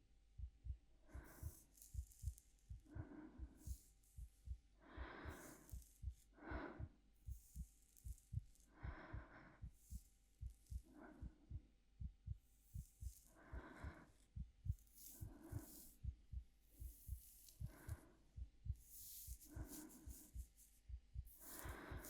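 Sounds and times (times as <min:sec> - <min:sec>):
heartbeat: 0:00.4 - 0:22.0
soft slow breathing: 0:01.0 - 0:22.0.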